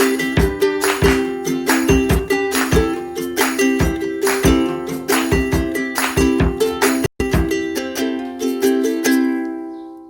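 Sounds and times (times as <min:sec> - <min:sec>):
regular beat: 0:00.0 - 0:08.0
upbeat plucked string tune: 0:00.0 - 0:09.8.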